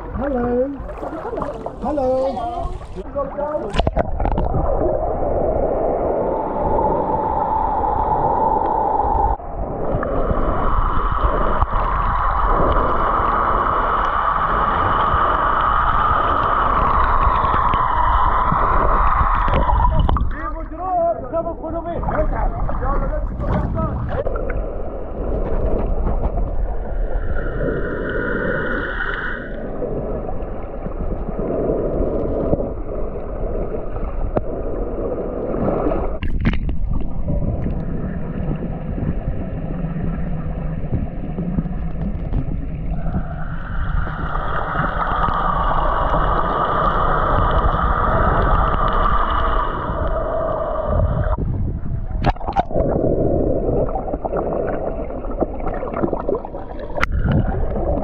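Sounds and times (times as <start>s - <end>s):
underwater gurgling rumble: 0.0s - 58.0s
boat engine whine underwater: 22.0s - 58.0s.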